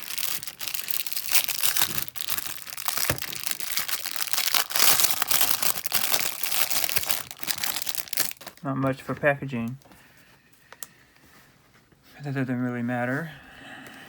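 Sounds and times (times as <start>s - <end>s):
packaging crinkling and tearing: 0.0s - 8.9s.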